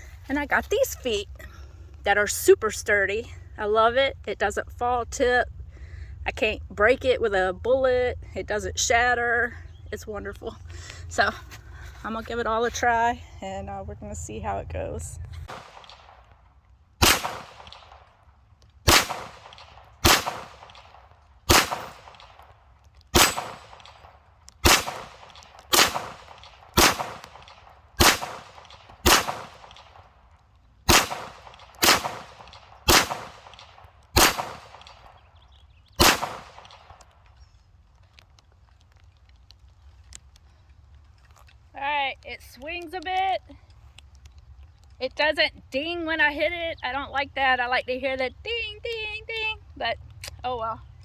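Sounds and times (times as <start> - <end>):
rifle shots echoing: 15.4 - 30.2, 30.8 - 35.2, 36.0 - 37.1.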